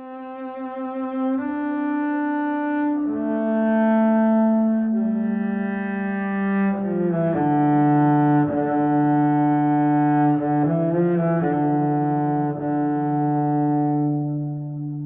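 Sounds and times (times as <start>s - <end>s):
slow bowed cello-like notes: 0.0s - 15.0s.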